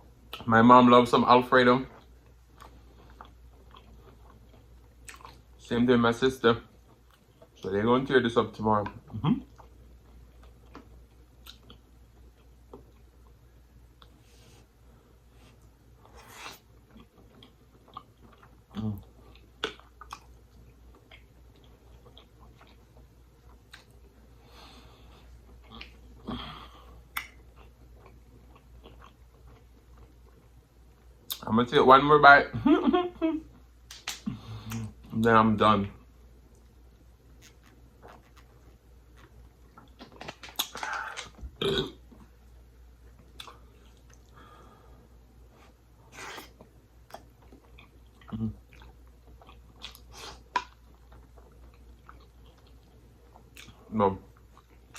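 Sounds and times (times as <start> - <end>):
chewing pasta: 1.8 - 5.6, 15.4 - 26.2, 27.0 - 31.4, 45.5 - 54.9
breathing: 24.3 - 25.3, 34.3 - 34.8, 44.3 - 45.2
wet mouth smacks and clicks: 27.1 - 27.4, 33.9 - 34.9
person burping: 41.6 - 42.0.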